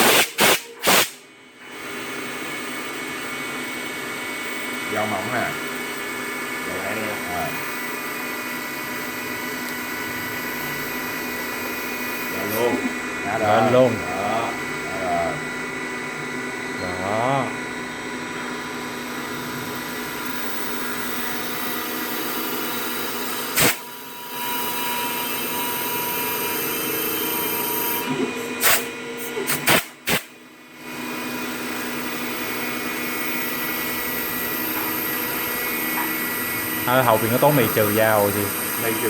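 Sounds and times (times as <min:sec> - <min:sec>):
lathe machine whine: 0:01.4 - 0:29.5, 0:30.5 - 0:39.0
sharp machine clicks: 0:29.5 - 0:30.3.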